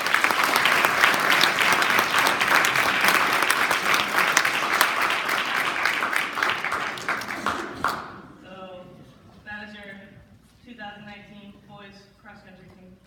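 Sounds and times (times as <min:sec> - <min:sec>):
audience applauding: 0:00.0 - 0:08.4.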